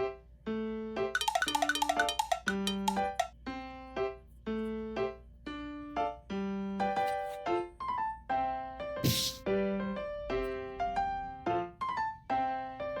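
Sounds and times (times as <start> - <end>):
simple keyboard melody: 1.2 - 3.8.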